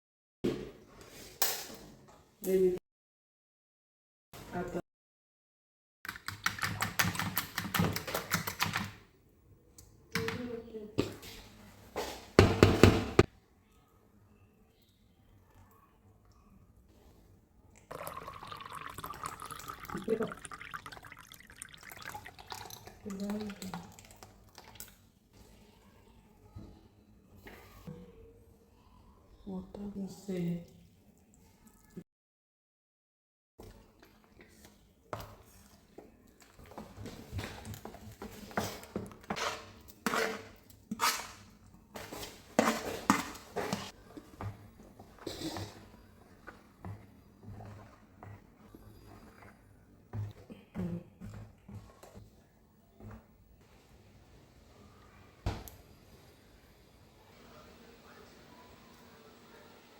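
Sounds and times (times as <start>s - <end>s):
water running: 17.9s - 24.9s.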